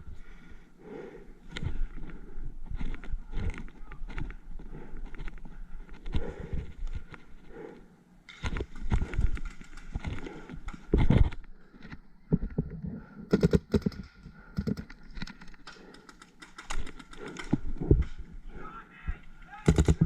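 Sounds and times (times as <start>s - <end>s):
sharp clicks: 13.3s - 17.6s.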